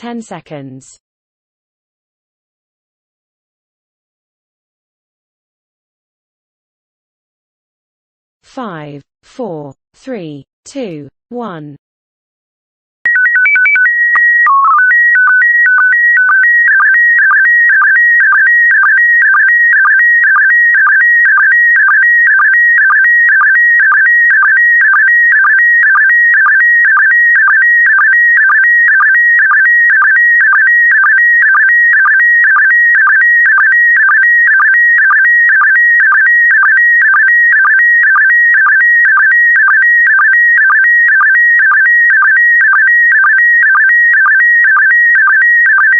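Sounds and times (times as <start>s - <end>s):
beeping tones jumping pitch: 13.1s - 40.8s.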